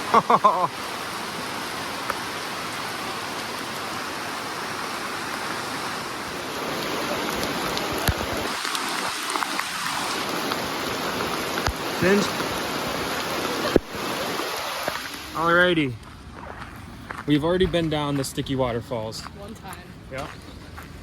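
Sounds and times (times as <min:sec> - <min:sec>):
flowing water rushing: 0:00.0 - 0:16.0.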